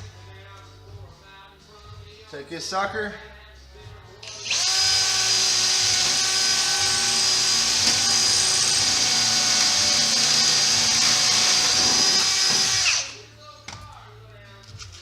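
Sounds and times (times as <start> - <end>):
power tool whining: 4.2 - 13.2.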